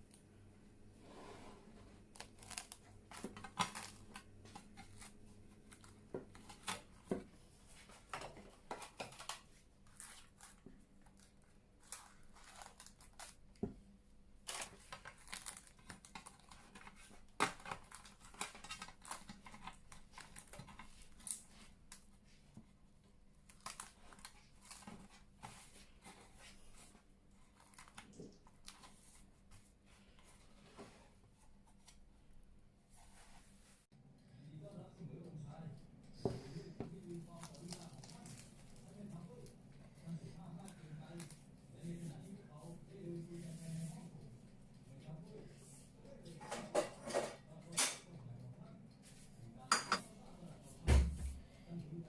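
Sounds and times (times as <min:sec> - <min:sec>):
crinkling and rustling: 0:01.4 - 0:32.1, 0:36.8 - 0:47.5.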